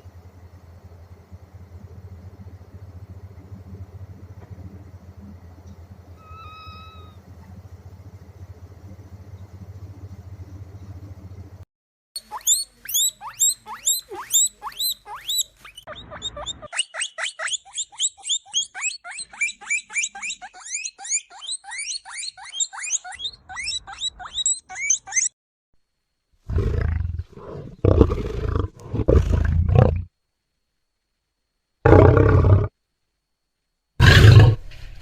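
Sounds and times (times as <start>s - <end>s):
steady low hum: 0.0s - 11.6s
animal chirping calls: 6.2s - 7.2s, 12.2s - 25.4s.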